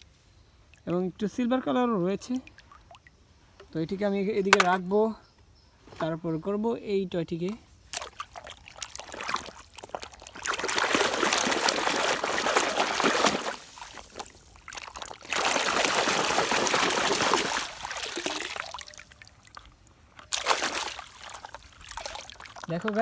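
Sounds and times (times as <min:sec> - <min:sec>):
water trickling: 0:00.7 - 0:04.8, 0:07.9 - 0:23.0
water pouring and splashing: 0:07.9 - 0:23.0.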